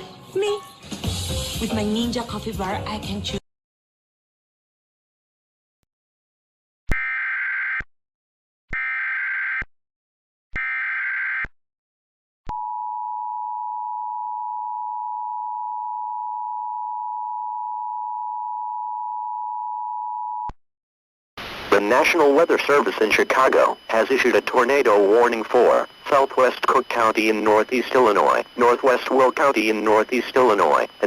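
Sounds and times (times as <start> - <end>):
data bursts: 21.7 - 31.0
two-tone attention signal: 21.8 - 31.0.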